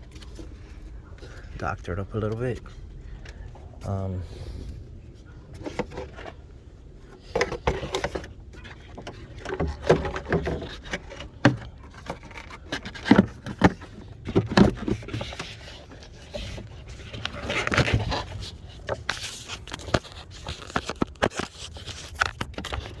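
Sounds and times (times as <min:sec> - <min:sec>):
plastic parts clicking and knocking: 0:05.5 - 0:06.4, 0:07.1 - 0:23.0.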